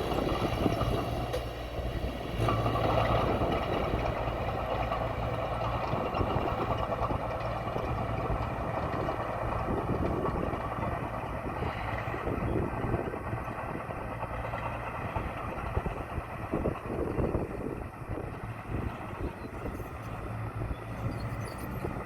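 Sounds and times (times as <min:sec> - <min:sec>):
diesel earthmover engine running: 0:00.0 - 0:22.0.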